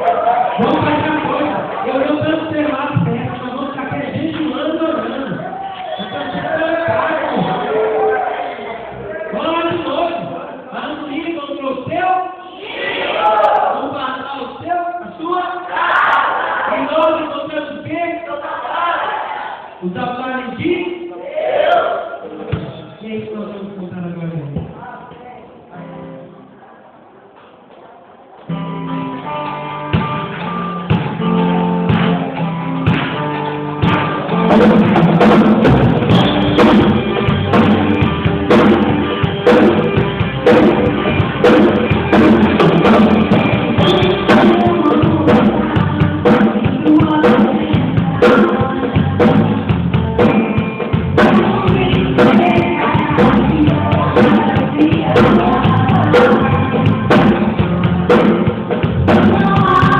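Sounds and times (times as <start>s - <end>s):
guitar: 0.0s - 10.5s, 24.4s - 59.9s
worship band music: 0.0s - 10.5s, 28.4s - 59.9s
drum kit: 0.1s - 7.8s, 28.5s - 59.9s.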